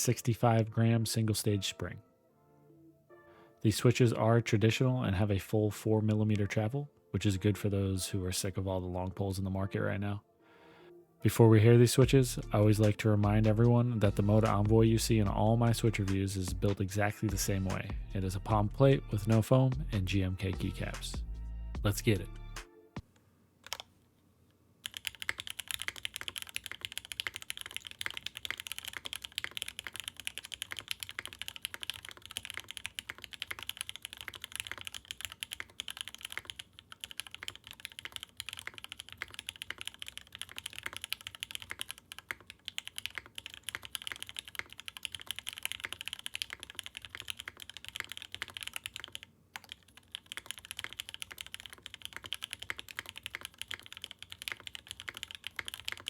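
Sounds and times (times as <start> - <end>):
fast typing on mechanical keyboard: 24.8 - 56.0.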